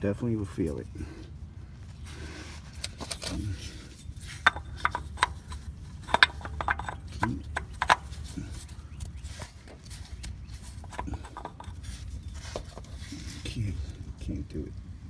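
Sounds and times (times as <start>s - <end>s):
steady low hum: 0.0s - 15.0s
tools and hard parts clicking: 2.8s - 13.1s.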